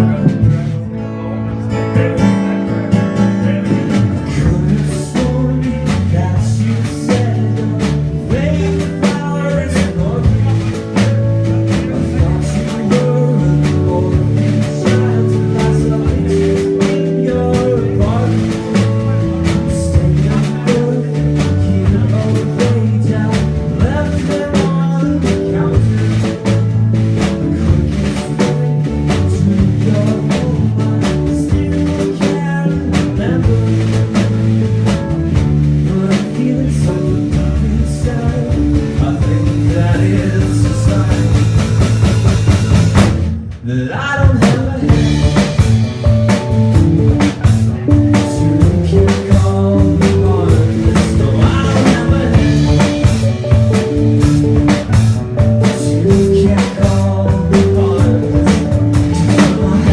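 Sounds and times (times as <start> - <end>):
live rock band playing: 0.0 - 59.9.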